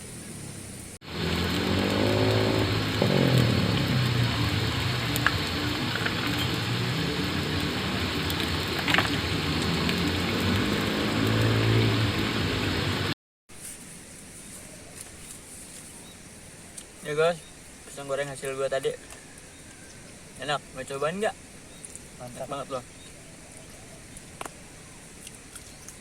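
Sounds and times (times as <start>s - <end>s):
steady rushing noise: 0.0s - 13.2s
vehicle engine revving: 1.0s - 13.2s.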